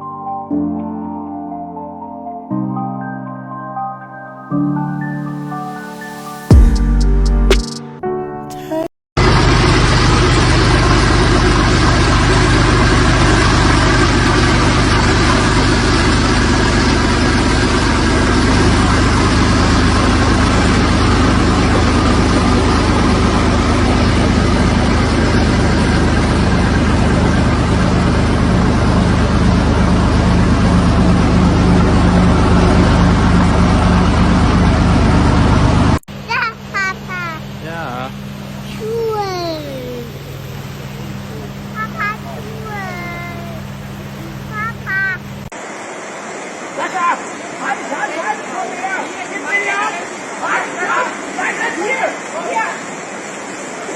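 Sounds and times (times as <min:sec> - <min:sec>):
truck engine running loudly: 0:09.2 - 0:36.2, 0:39.5 - 0:46.5
constant rushing noise: 0:41.2 - 0:53.9.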